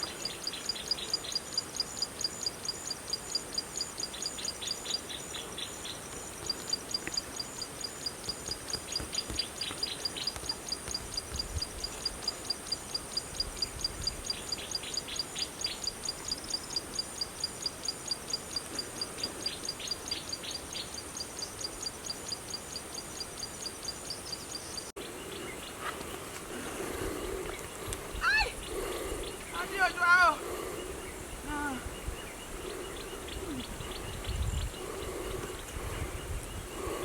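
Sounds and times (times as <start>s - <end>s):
high chirping chorus: 26.5s - 37.0s.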